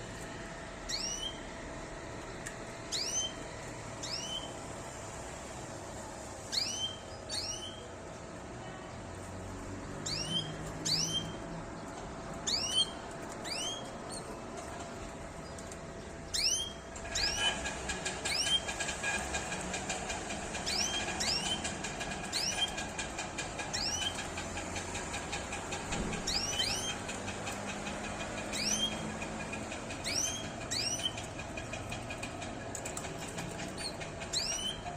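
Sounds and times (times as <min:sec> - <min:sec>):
canaries chirping: 0:00.9 - 0:01.4, 0:02.9 - 0:03.4, 0:04.0 - 0:04.6, 0:06.5 - 0:08.0, 0:09.9 - 0:14.8, 0:15.4 - 0:34.9.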